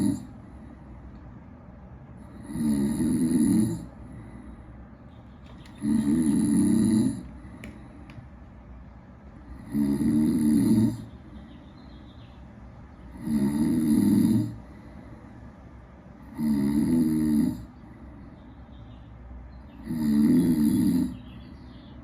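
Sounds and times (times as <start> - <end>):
person snoring: 0.0 - 0.4, 2.2 - 4.5, 5.8 - 7.7, 9.5 - 11.1, 13.1 - 14.9, 16.2 - 17.8, 19.8 - 21.2.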